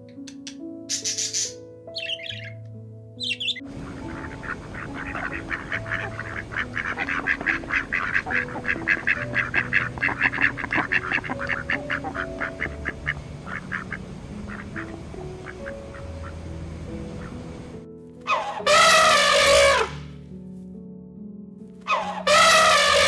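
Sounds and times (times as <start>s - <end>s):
ducks quacking: 3.4s - 16.5s, 17.1s - 17.4s, 18.3s - 20.0s, 21.9s - 23.0s.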